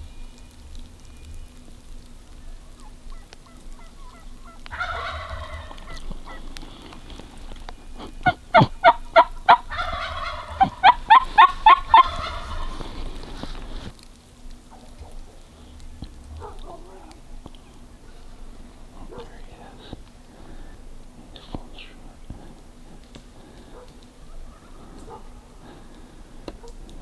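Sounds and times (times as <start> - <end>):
turkey gobbling: 1.8 - 14.0, 14.6 - 19.4, 23.0 - 25.8.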